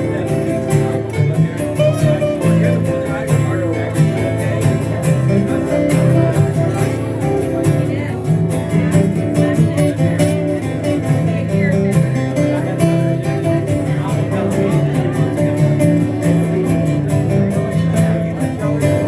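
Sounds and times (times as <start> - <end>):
country-rock band playing: 0.0 - 19.0
strummed acoustic guitar: 0.0 - 19.0.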